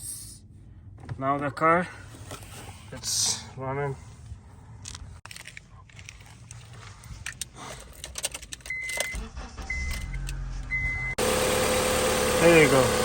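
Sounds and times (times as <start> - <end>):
keys jangling and clicking: 5.3 - 9.2
car engine starting: 8.0 - 13.0.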